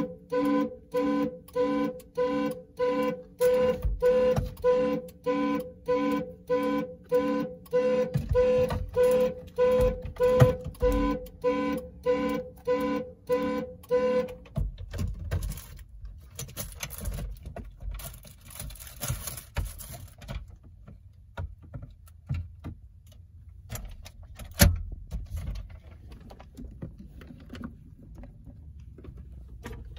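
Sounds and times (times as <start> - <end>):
car alarm horn pulses: 0.0 - 14.5.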